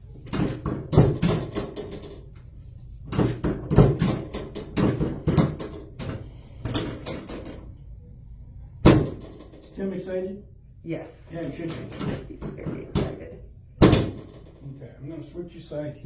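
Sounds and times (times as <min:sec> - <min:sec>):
knocks and clicks on treatment table: 0:00.2 - 0:07.7, 0:11.5 - 0:14.6.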